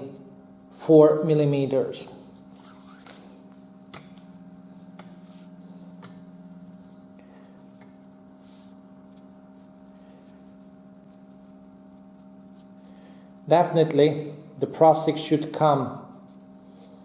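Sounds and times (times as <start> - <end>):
low hum: 0.0 - 17.0
soft rustling: 5.0 - 13.3.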